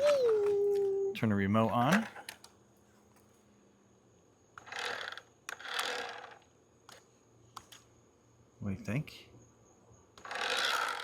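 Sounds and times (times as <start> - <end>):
toy electric motor whirring: 4.6 - 6.5, 10.2 - 11.0.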